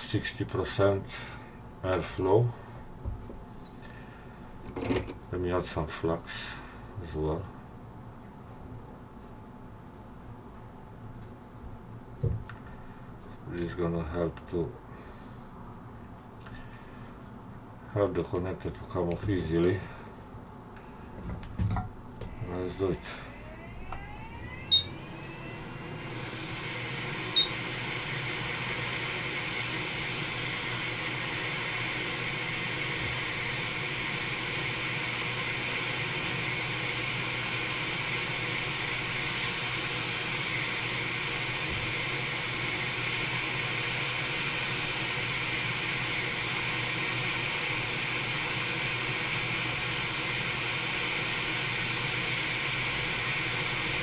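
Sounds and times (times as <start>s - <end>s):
hot air blower hissing: 22.2s - 54.0s.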